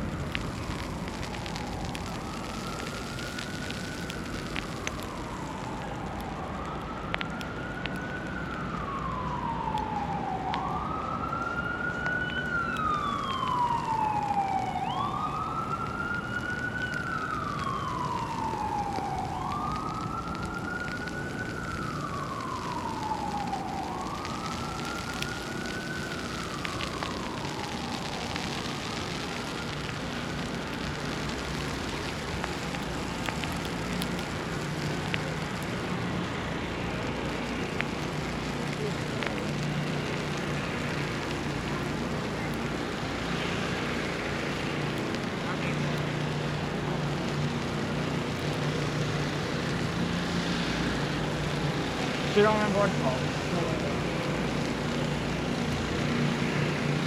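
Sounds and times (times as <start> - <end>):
faint higher siren: 0.0 - 57.0
siren wailing: 0.0 - 57.0
street ambience hiss: 0.0 - 57.0.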